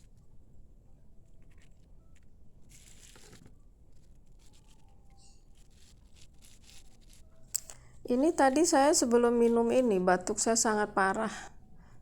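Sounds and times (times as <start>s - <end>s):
wet rustle: 1.4s - 7.7s.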